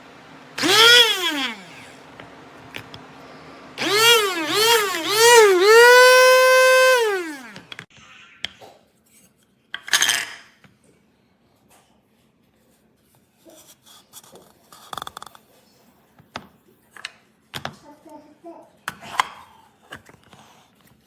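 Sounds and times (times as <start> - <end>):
coffee grinder motor spinning down: 0.6 - 2.0, 3.8 - 7.8
clinks and knocks of dishes: 9.8 - 10.5.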